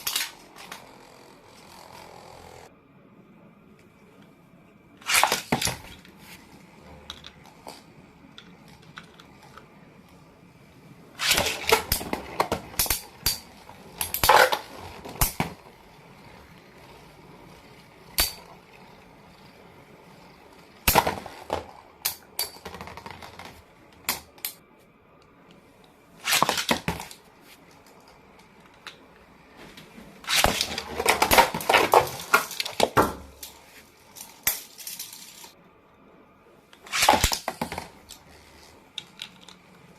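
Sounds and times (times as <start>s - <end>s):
plastic toy parts clattering: 0.0s - 1.0s, 5.0s - 9.6s, 11.2s - 17.0s, 30.2s - 35.6s, 36.8s - 39.9s.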